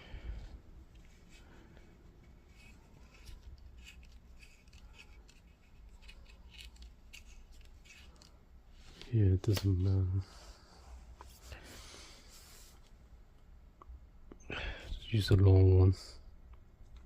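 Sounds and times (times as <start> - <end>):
small metal parts clicking: 3.1 - 8.4.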